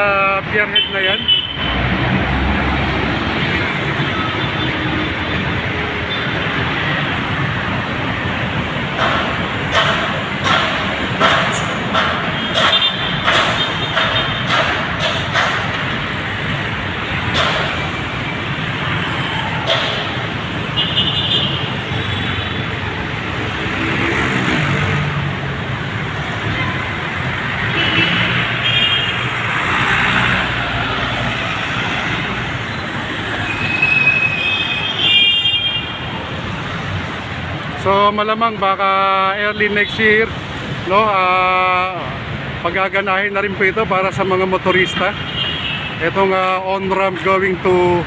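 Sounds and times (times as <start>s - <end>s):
passing cars and trucks: 0.0s - 48.0s.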